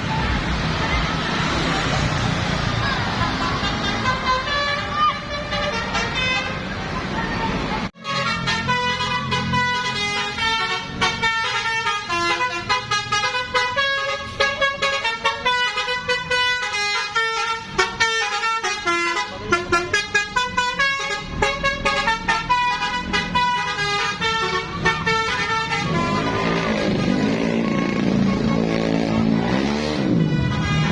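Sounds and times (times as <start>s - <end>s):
multi-tone horn playing a tune: 8.0s - 30.9s.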